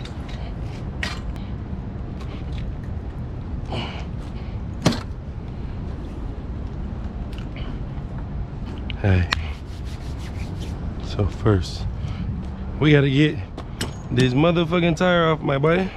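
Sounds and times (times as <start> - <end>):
steady low hum: 0.0 - 15.9
knocks and clanks: 4.8 - 5.2.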